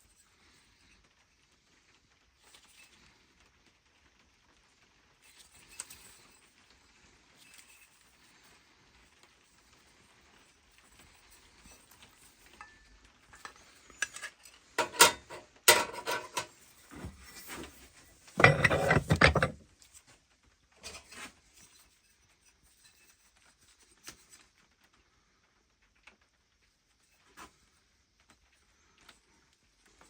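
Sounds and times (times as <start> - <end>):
metallic clinks and knocks: 12.4 - 19.6
metal scraping: 13.4 - 19.6.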